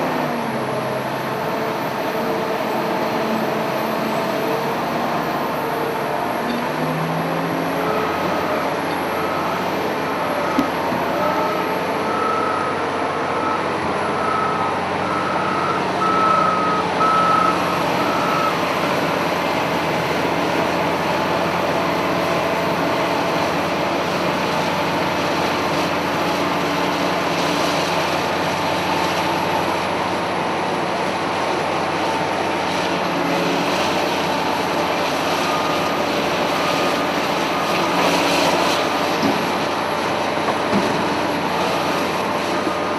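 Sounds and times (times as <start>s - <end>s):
diesel engine running: 0.0s - 42.9s
reversing alarm beeps: 9.0s - 9.6s, 10.4s - 18.6s.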